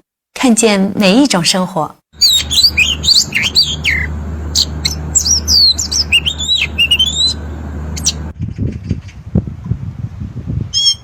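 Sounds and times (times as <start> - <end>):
blackbird singing: 2.2 - 8.2
steady low hum: 2.2 - 8.4.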